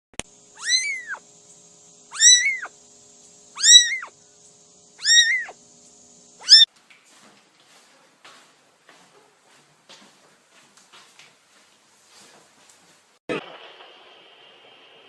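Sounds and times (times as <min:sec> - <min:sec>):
cat meowing: 0:00.6 - 0:01.2, 0:02.1 - 0:02.7, 0:03.6 - 0:04.1, 0:05.0 - 0:05.6, 0:06.4 - 0:06.7.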